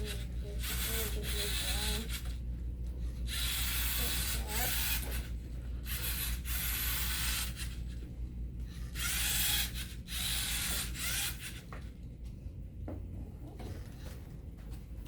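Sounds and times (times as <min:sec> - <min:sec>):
toy car motors whirring: 0:00.0 - 0:02.4, 0:03.2 - 0:08.1, 0:08.7 - 0:11.8
steady low hum: 0:00.0 - 0:15.0.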